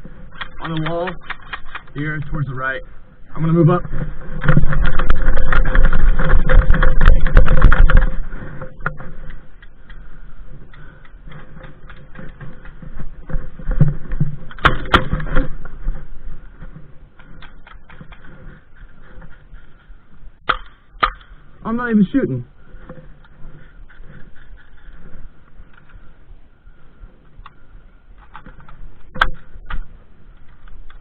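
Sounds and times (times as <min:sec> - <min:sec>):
scattered clicks and knocks: 0:00.0 - 0:02.8, 0:03.4 - 0:21.3
gear and clothing rattling: 0:03.7 - 0:09.8.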